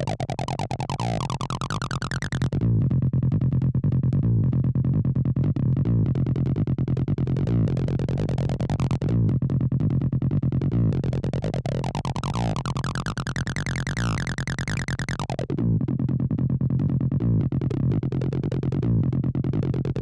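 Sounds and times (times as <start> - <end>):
synthesizer bassline: 0.0 - 2.8, 7.4 - 9.4, 10.6 - 20.0
steady low pulse: 0.0 - 20.0.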